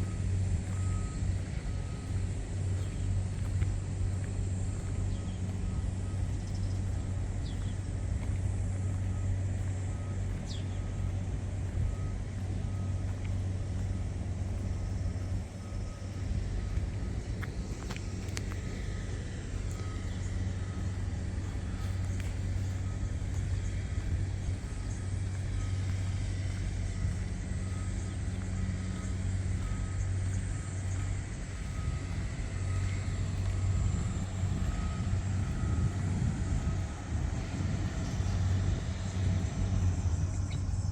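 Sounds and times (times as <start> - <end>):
faint short beeps: 0.0 - 38.9
harvester engine droning: 0.0 - 40.9
bird chirps: 4.2 - 11.3.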